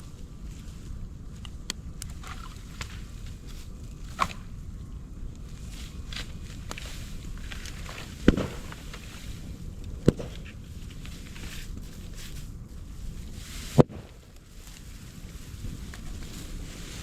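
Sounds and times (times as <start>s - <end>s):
fire crackling: 0.0s - 17.0s
bamboo bursting bangs: 7.8s - 9.2s, 10.0s - 10.6s, 13.7s - 14.4s.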